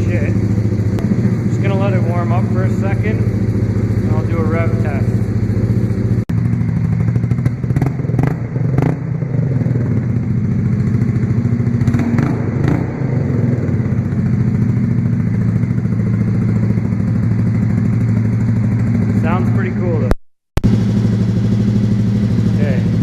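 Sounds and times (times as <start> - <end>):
motorcycle engine idling: 0.0 - 23.0.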